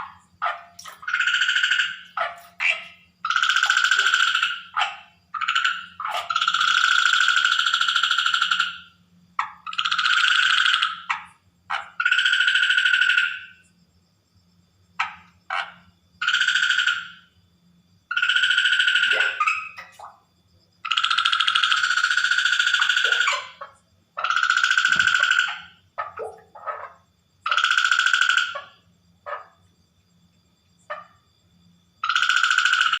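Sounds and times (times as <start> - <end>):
short single frog notes: 0.0 - 13.6, 18.1 - 29.6, 32.0 - 33.0
frog calling pulsed trill: 0.0 - 13.7, 15.0 - 17.4, 18.0 - 20.2, 20.8 - 29.6, 32.0 - 33.0.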